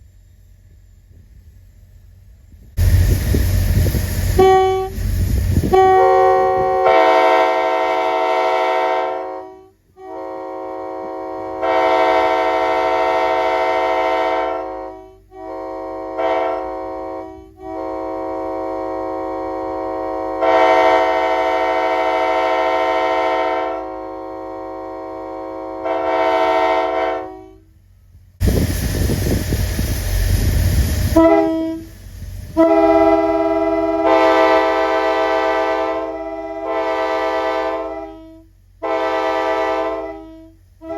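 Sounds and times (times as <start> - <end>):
loud rushing noise: 2.8 - 5.8, 28.4 - 31.2
locomotive air horn blasts: 4.3 - 27.8, 31.0 - 40.9.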